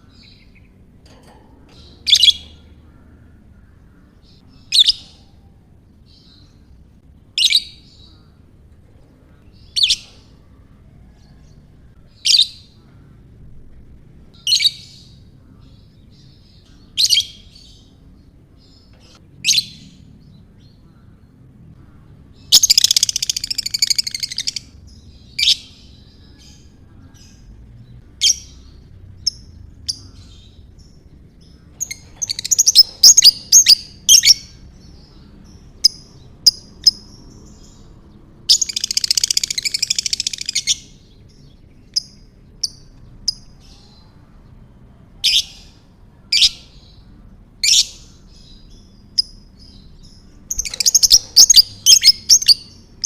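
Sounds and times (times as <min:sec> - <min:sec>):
lovebird chirps: 0:31.8 - 0:34.5
lovebird chattering trill: 0:31.8 - 0:34.6, 0:50.5 - 0:52.8.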